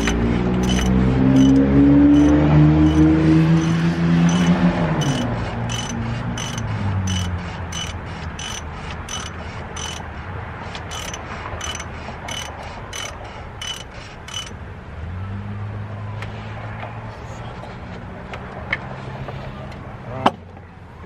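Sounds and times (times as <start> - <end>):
ratchet wrench clicking: 0.0 - 14.6.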